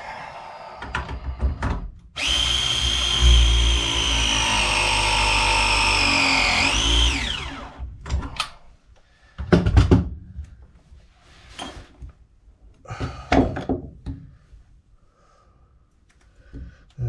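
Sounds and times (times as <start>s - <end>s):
cordless power tool motor: 2.2s - 7.9s
tools knocking and clunking: 13.0s - 14.4s.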